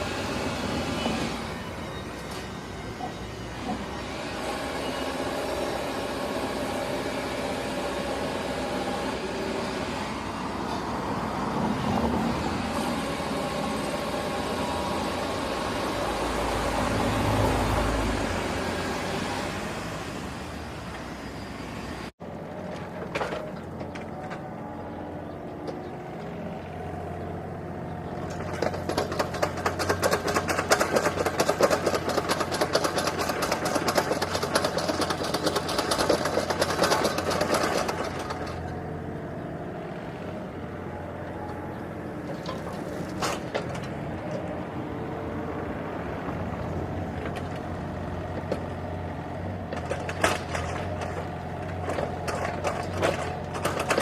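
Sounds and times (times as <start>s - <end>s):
fast even clatter: 28.3s - 38.7s.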